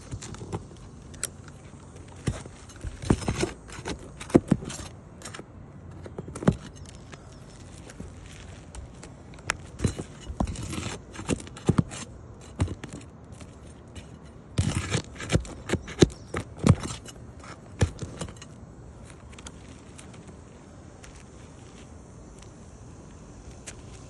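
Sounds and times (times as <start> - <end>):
hand tool scraping under shingles: 0.0 - 18.6.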